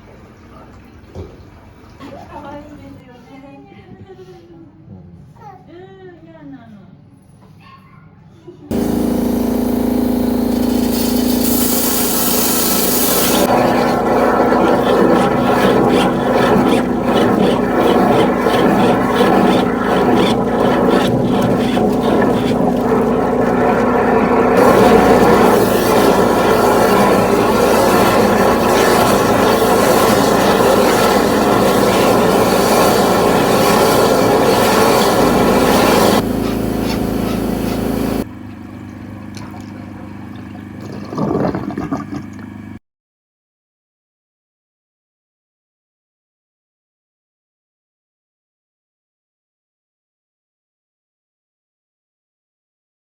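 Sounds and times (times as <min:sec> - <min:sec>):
loud spray hiss: 0:08.7 - 0:14.0, 0:24.6 - 0:38.2
rough rushing scraping noise: 0:08.7 - 0:38.2
pressure washer droning: 0:08.7 - 0:41.4
drain jetter mechanical hum: 0:08.7 - 0:42.8.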